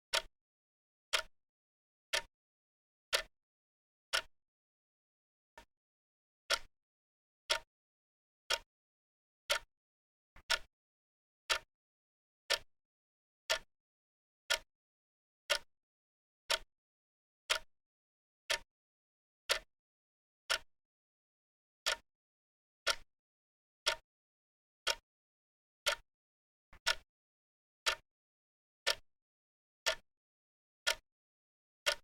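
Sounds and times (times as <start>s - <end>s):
clock ticking: 0.1s - 0.3s, 2.1s - 2.3s, 7.5s - 7.7s, 9.5s - 9.7s, 10.4s - 10.7s, 11.5s - 11.7s, 16.5s - 16.7s, 18.5s - 18.7s, 26.8s - 27.0s, 27.8s - 28.0s, 29.8s - 30.0s.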